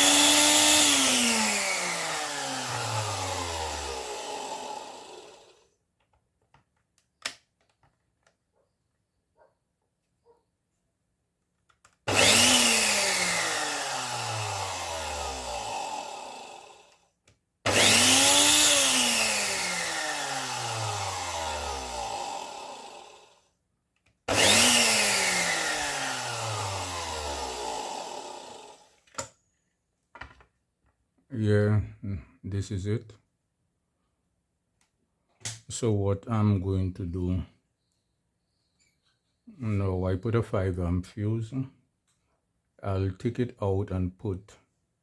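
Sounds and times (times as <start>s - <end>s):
blender motor whirring: 0.0s - 5.7s, 12.1s - 17.0s, 17.7s - 23.4s, 24.3s - 29.0s.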